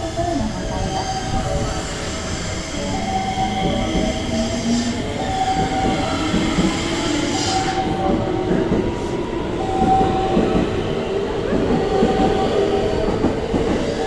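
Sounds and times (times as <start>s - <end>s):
wheels clattering on rails: 3.0s - 14.0s.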